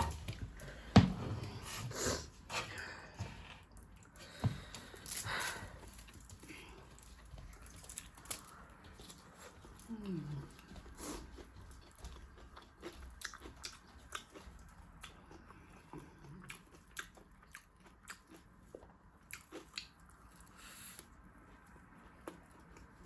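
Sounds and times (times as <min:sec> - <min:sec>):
small crunches: 0:04.0 - 0:09.8
chewing and biting: 0:06.0 - 0:23.0.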